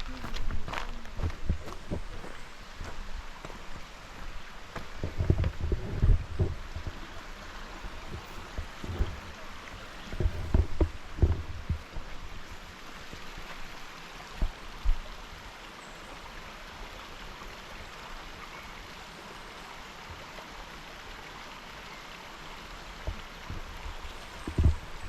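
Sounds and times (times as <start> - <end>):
dull low thumps: 0.0 - 2.2, 2.8 - 12.4
stream rushing: 0.0 - 25.0.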